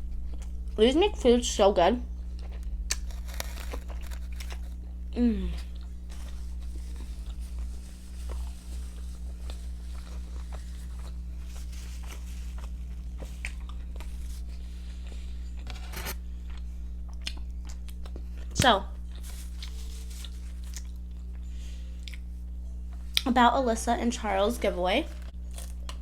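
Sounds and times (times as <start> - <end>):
low hum: 0.0 - 26.0
chewing and biting food: 2.3 - 5.0, 5.6 - 22.3, 25.1 - 26.0.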